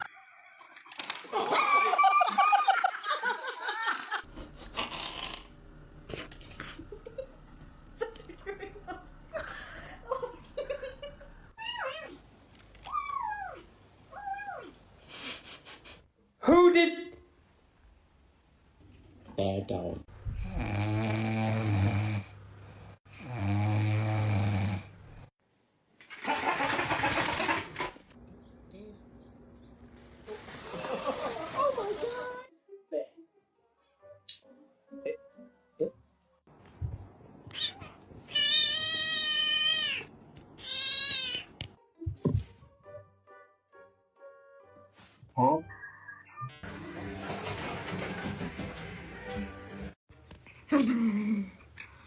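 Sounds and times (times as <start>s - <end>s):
low snores: 20.3s - 25.3s
breathy hiss: 30.2s - 32.5s
person laughing: 30.6s - 32.0s.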